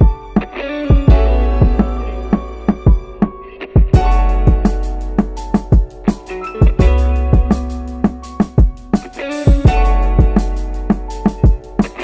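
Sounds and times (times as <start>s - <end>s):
background music with drum beat: 0.0s - 12.0s.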